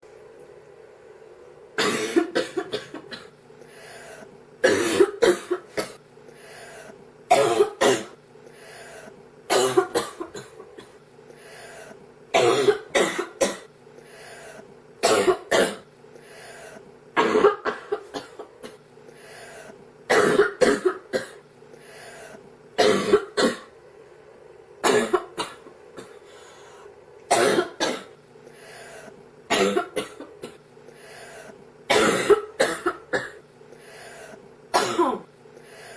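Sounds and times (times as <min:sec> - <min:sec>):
girl coughing: 0:01.8 - 0:03.3, 0:04.6 - 0:06.0, 0:07.3 - 0:08.2, 0:09.5 - 0:10.9, 0:12.4 - 0:13.7, 0:17.2 - 0:18.8, 0:20.1 - 0:21.4, 0:22.8 - 0:23.7, 0:24.8 - 0:26.2, 0:27.3 - 0:28.1, 0:29.5 - 0:30.6, 0:31.9 - 0:33.4, 0:34.8 - 0:35.3.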